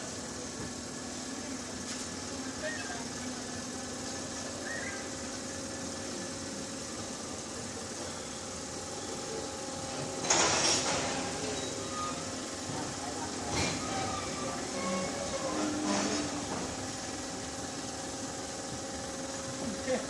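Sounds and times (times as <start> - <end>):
diesel locomotive idling: 0.0 - 20.0.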